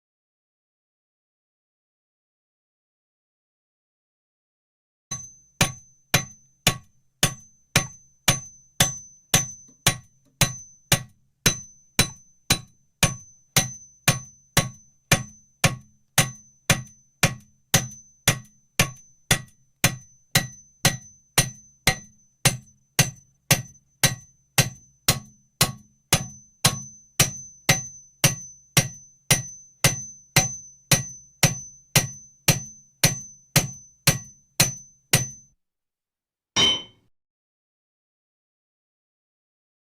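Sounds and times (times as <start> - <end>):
hammer striking metal: 5.1 - 35.4, 36.6 - 37.0.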